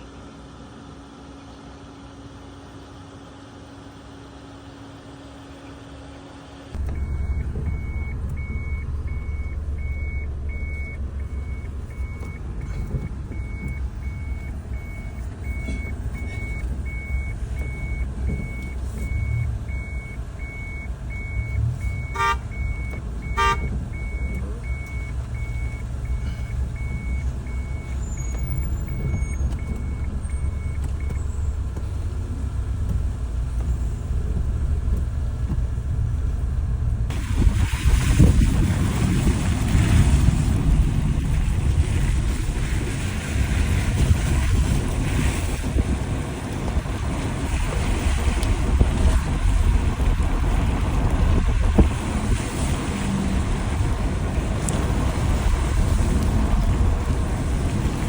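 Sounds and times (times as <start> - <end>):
car engine and road rumble: 0.0 - 58.0
electronic warning beep: 6.8 - 31.5.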